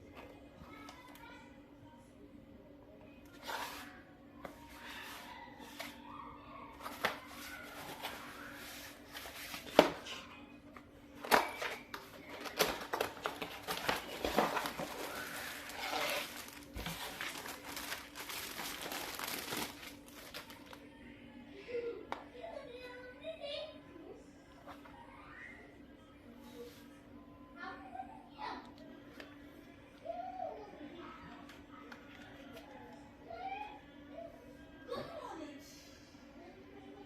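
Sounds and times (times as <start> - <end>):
packaging crinkling and tearing: 11.2 - 20.8.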